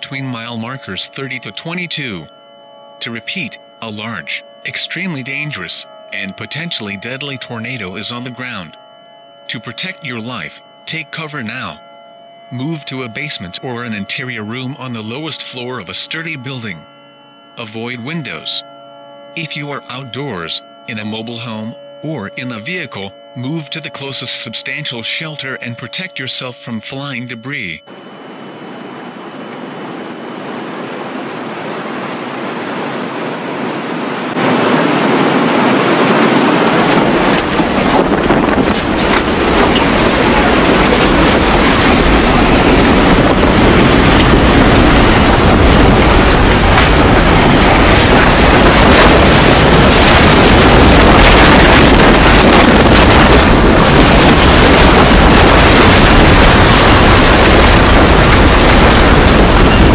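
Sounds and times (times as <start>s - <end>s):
tornado wind roar: 3.0s - 8.7s, 27.8s - 59.9s
deep rumble: 34.2s - 59.9s.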